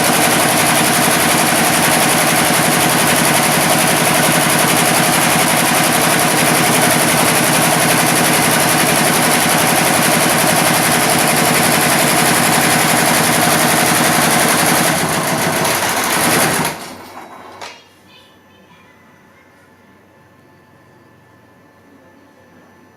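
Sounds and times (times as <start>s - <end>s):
embroidery machine rattling: 0.0s - 17.5s.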